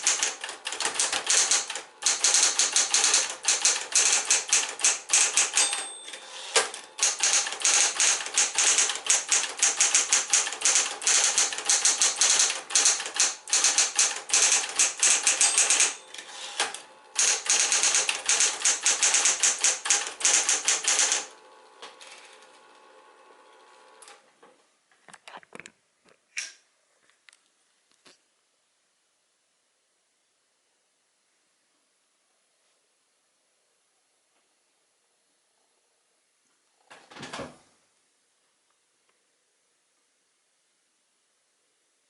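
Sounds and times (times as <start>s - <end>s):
typewriter key strikes: 0.0s - 21.3s
typewriter motor humming: 0.0s - 23.0s.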